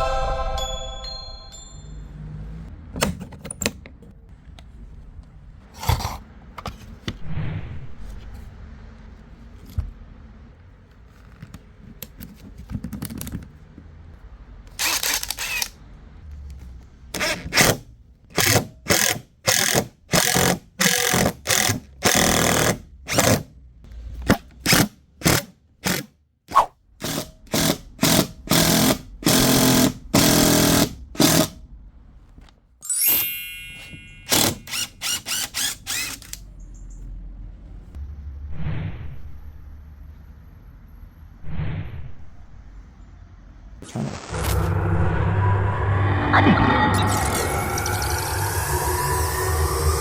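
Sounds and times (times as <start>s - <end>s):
impact drill bursts: 14.8s - 15.8s, 18.4s - 23.4s, 27.0s - 31.6s, 34.3s - 36.4s.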